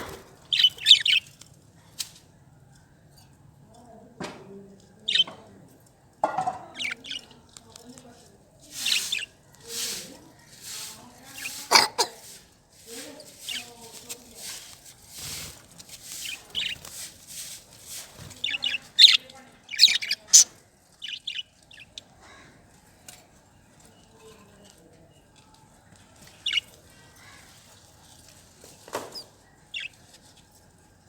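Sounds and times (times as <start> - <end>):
budgerigars chirping: 0.5 - 1.2, 5.1 - 5.4, 6.7 - 7.3, 8.8 - 9.3, 16.2 - 16.8, 18.4 - 22.0, 26.4 - 26.7
wings rustling: 8.7 - 20.5.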